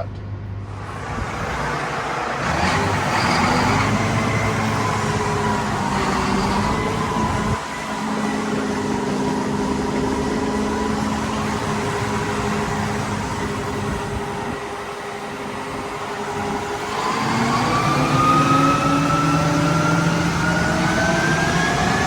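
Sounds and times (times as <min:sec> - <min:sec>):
combine engine running: 0:00.6 - 0:22.0
threshing machinery whine: 0:00.7 - 0:22.0.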